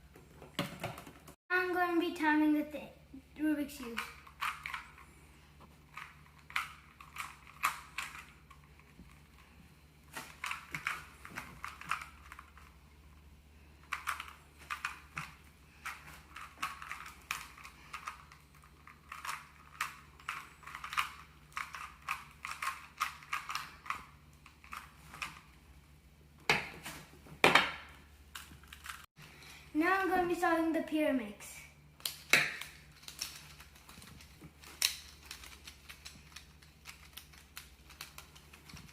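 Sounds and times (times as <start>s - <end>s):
plastic cube clicking turns: 13.8s - 24.0s, 32.0s - 38.9s.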